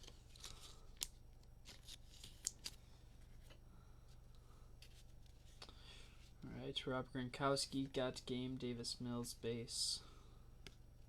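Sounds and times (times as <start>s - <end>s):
trading cards rustling: 0.0s - 3.6s.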